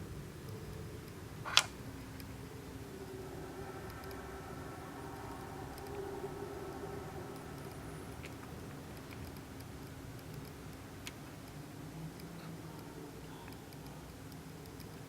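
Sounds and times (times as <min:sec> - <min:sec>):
background hiss: 0:00.0 - 0:15.0
faint low hum: 0:00.0 - 0:15.0
soft ticks: 0:00.4 - 0:01.3, 0:03.8 - 0:04.3, 0:05.2 - 0:06.1, 0:07.3 - 0:15.0.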